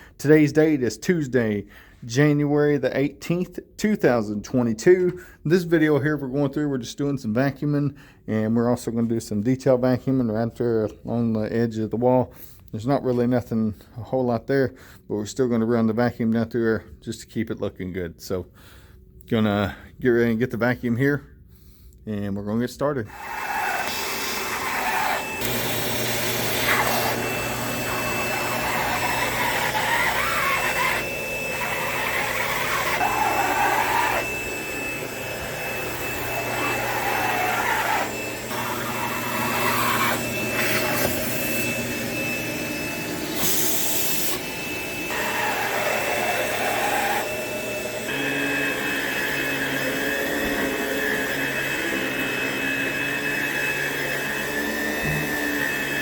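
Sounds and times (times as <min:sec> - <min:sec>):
vacuum cleaner running: 0:23.1 - 0:56.0.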